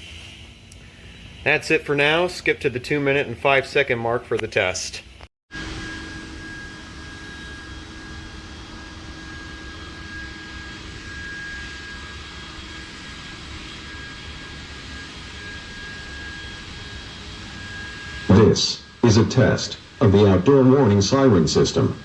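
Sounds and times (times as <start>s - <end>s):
steady rushing noise: 0.0s - 5.0s
faint constant hum: 0.0s - 5.2s.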